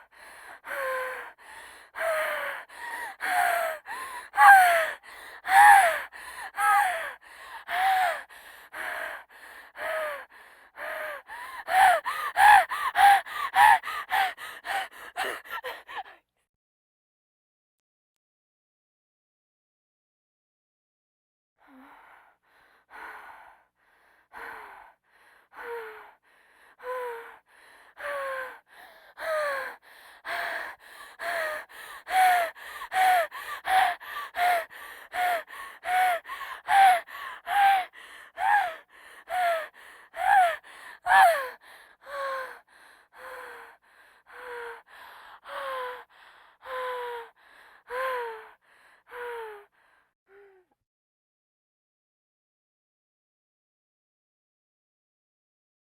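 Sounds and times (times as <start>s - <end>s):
woman gasping wheezing breaths: 0.0s - 16.2s, 25.2s - 50.6s.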